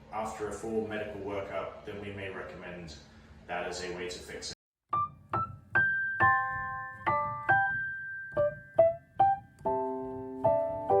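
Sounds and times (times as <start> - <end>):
slow piano melody: 4.9 - 11.0.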